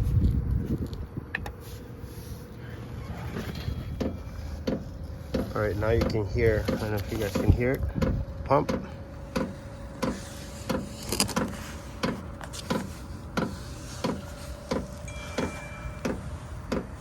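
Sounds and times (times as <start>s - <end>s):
blower fan hum: 0.0s - 17.0s
fuel pump ticking: 3.9s - 17.0s.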